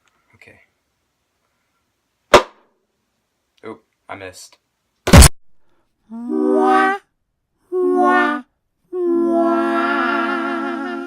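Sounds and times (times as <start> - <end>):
choir singing held chords: 6.2 - 7.0, 7.8 - 11.0.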